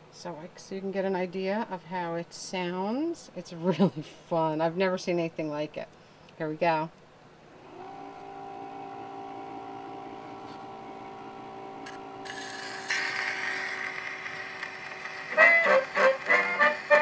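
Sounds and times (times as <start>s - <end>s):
record surface hiss: 0.0s - 8.4s, 9.4s - 17.0s
chord from old phonograph record: 9.7s - 17.0s.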